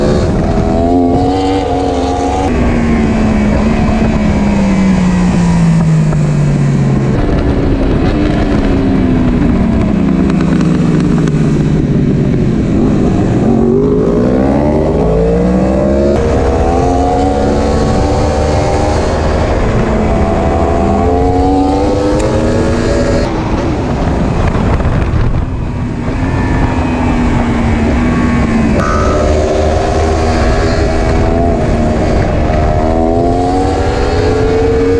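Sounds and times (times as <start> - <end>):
motorcycle engine running hard: 0.0 - 34.9
steady rushing noise: 22.3 - 34.9.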